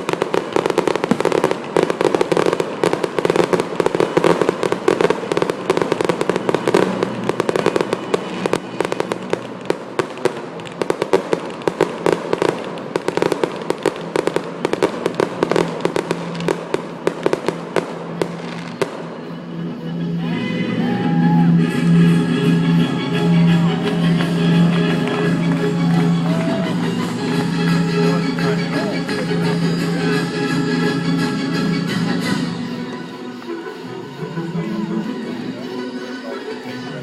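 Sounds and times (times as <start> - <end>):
fireworks crackling pops: 0.0 - 19.4, 22.7 - 30.0
music playing: 0.0 - 37.0.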